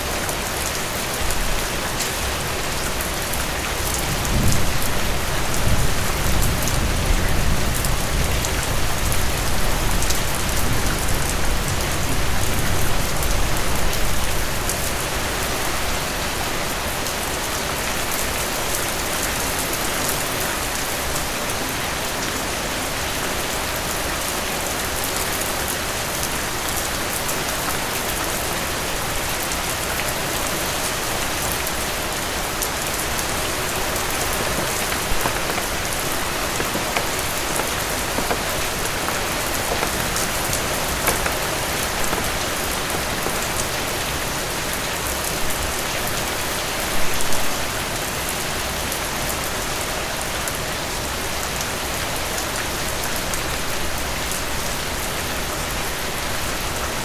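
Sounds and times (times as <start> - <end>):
heavy rain hissing: 32.4 - 44.9
raindrop hits: 33.2 - 44.3.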